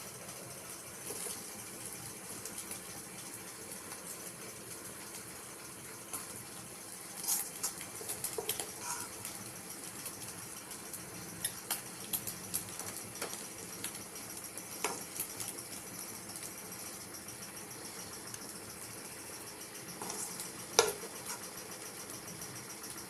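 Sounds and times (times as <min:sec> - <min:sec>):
steady hiss: 0:00.0 - 0:23.0
utensils clinking against cookware: 0:07.2 - 0:09.2, 0:20.0 - 0:21.5.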